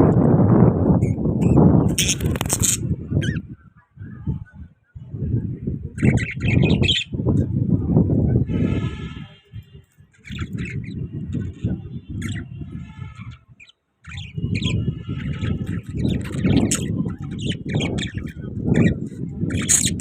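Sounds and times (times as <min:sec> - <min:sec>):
parrots chirping and squawking: 0:01.0 - 0:03.5, 0:06.0 - 0:07.1, 0:10.1 - 0:20.0.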